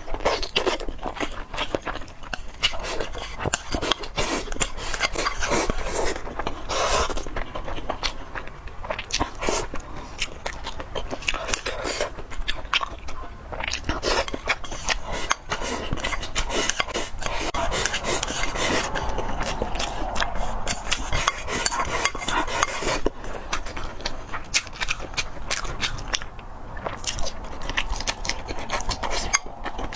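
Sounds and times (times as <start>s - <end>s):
food being bitten and chewed: 0.0s - 29.9s
utensils clicking against a dish: 14.0s - 18.6s, 20.7s - 23.0s.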